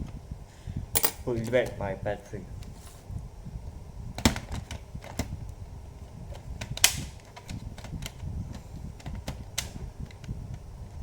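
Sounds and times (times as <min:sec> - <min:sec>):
loud plastic snaps: 0:06.6 - 0:08.2, 0:09.0 - 0:10.3.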